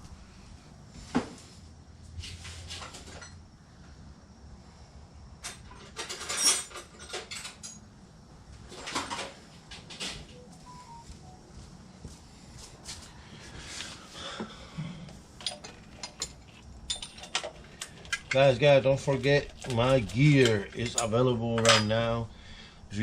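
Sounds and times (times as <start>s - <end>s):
hand tools clattering: 5.4s - 7.8s, 15.4s - 22.2s.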